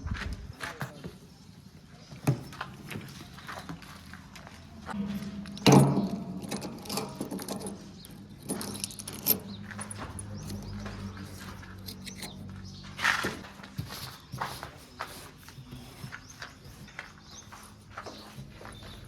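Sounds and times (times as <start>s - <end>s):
metal clanks and knocks: 4.9s - 13.8s
diesel engine running: 7.8s - 13.7s.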